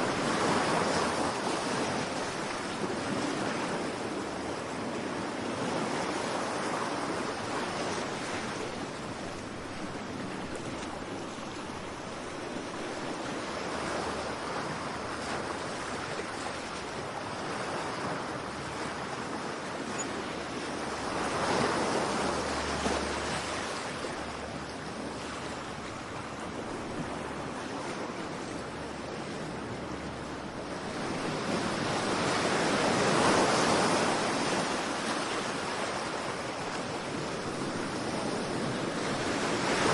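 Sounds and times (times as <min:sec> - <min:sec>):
ocean waves breaking: 0:00.0 - 0:39.9.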